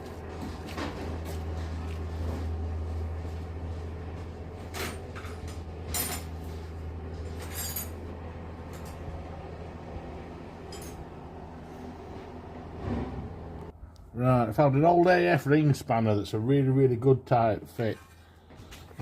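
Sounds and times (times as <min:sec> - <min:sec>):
steady low hum: 0:00.0 - 0:19.0
metal tools clinking: 0:04.7 - 0:06.4, 0:07.2 - 0:08.0, 0:10.6 - 0:11.1.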